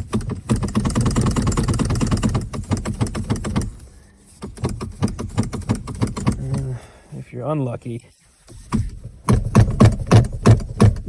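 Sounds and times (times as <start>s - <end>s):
steering lock clattering knocks: 0.0s - 3.8s, 4.4s - 6.8s, 8.6s - 11.0s
steering wheel clunks: 0.0s - 7.0s, 8.5s - 11.0s.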